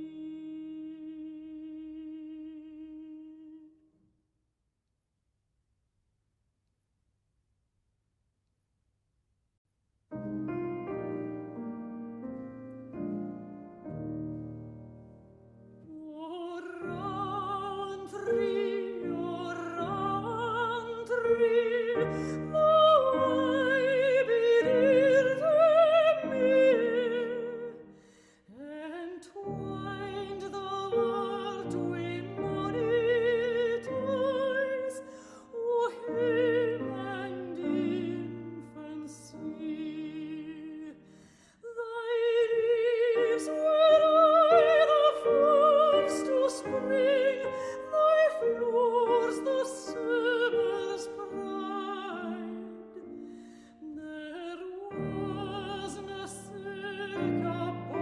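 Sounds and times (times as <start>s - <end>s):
classical singing with vibrato: 0.0s - 3.8s, 15.8s - 58.0s
piano accompaniment: 10.1s - 27.8s, 28.8s - 40.9s, 42.2s - 58.0s.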